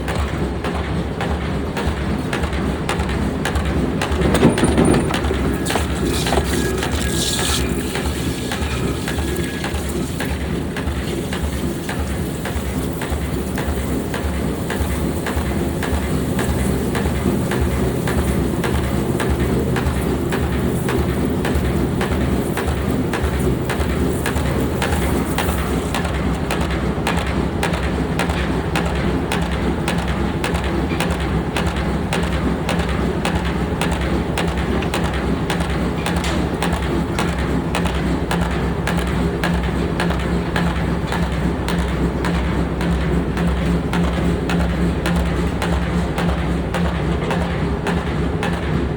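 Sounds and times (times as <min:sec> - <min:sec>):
heavy machine rumble: 0:03.3 - 0:29.2
air hammer striking metal: 0:03.4 - 0:26.7.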